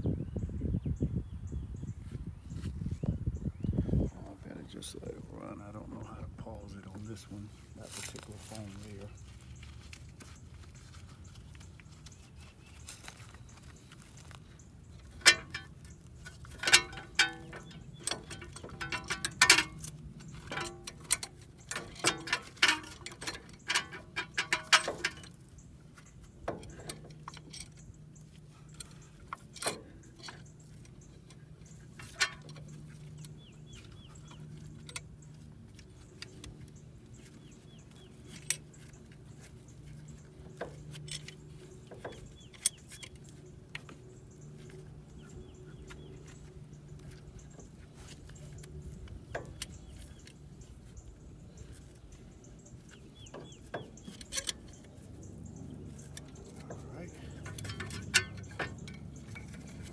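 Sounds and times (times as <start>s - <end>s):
metal tools clicking and clinking: 13.0s - 51.0s, 51.6s - 59.9s.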